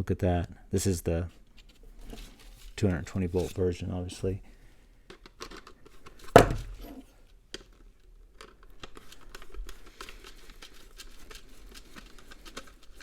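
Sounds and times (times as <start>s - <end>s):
loud plastic knock: 6.3s - 7.0s
small plastic clicks and scrapes: 7.5s - 13.0s.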